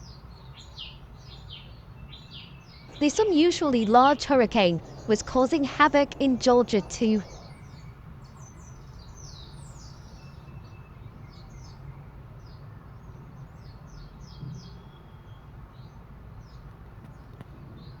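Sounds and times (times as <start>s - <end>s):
small birds chirping: 0.0s - 11.9s
low rumble: 2.9s - 7.9s.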